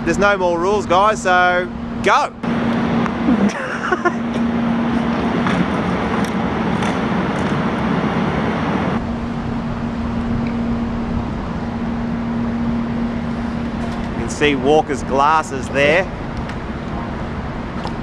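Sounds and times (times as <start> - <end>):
engine hum: 2.4 - 9.0
traffic noise: 2.4 - 9.0.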